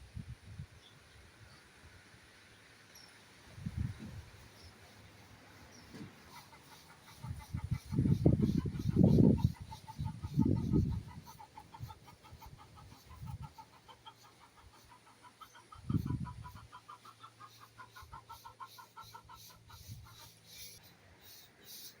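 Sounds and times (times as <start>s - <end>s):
chickens clucking: 3.7s - 20.9s.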